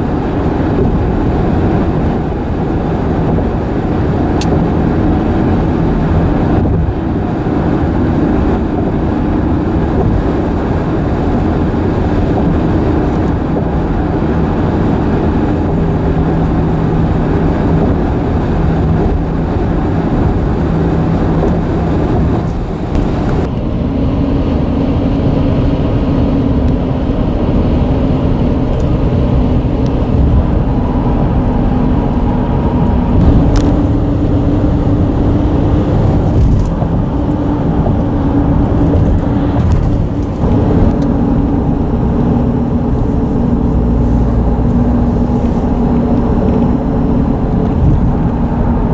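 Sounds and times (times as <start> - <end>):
car tyres droning on bridge: 0.0 - 48.9
heavy low rumble: 0.0 - 48.9.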